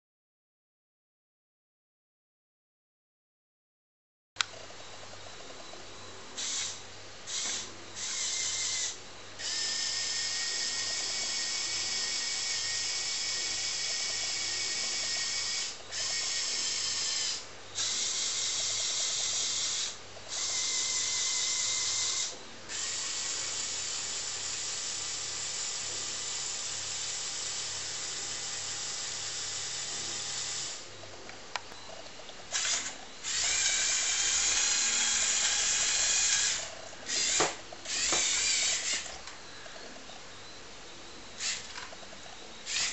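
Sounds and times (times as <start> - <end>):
small electric motors whirring: 6.4 - 30.8, 31.9 - 40.1, 41.4 - 42.0, 42.6 - 42.9.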